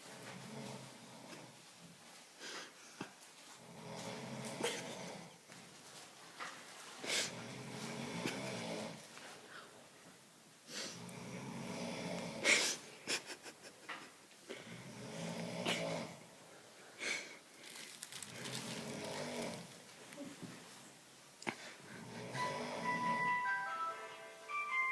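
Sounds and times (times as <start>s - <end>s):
heavy snoring: 3.6s - 5.3s, 7.2s - 9.0s, 11.0s - 12.5s, 14.6s - 16.2s, 18.3s - 19.7s, 21.8s - 23.2s.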